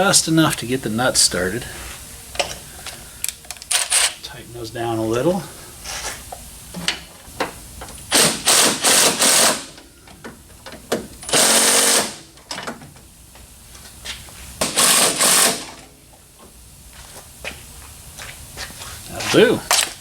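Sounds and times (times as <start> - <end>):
impact wrench hammering: 8.1 - 9.7, 11.3 - 12.2, 14.6 - 15.7.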